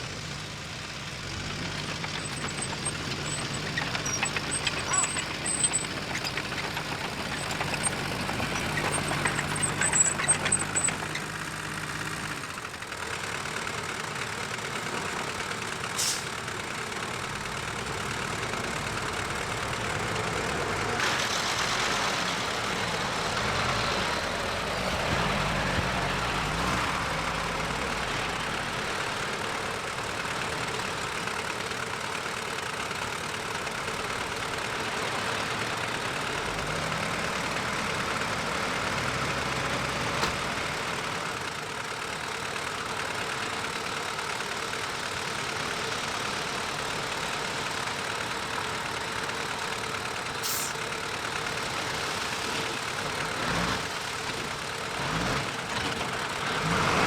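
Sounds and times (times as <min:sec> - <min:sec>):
diesel engine of earthmoving machine: 0:00.0 - 0:57.0
high squeaks: 0:01.9 - 0:11.3.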